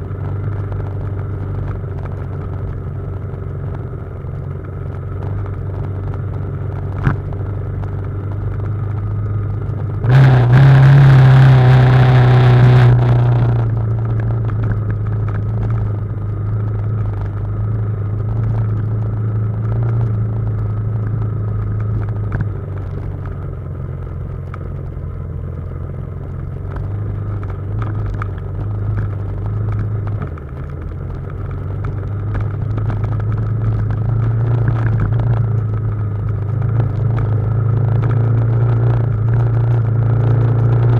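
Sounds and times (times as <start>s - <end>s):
motorcycle engine running: 0.0s - 40.9s
loud noisy rush: 10.0s - 13.8s.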